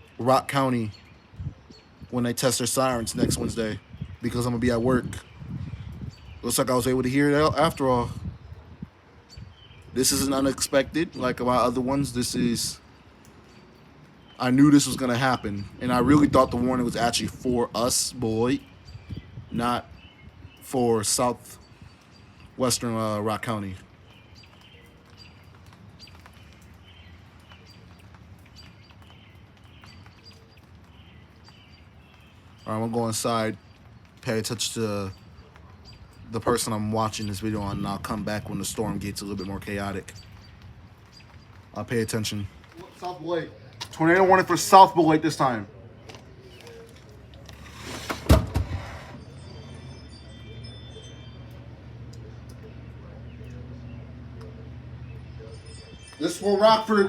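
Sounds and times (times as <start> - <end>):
birds chirping: 0.0 - 57.0
door sliding shut with thud: 47.6 - 49.3.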